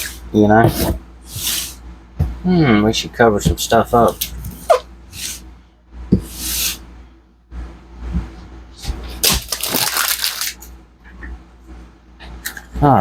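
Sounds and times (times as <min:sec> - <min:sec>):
packing crinkling: 0:09.1 - 0:10.7.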